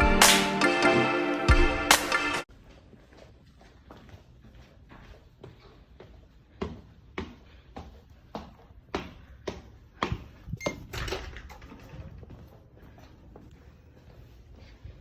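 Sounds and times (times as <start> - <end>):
footsteps on hard floor: 2.5 - 10.7.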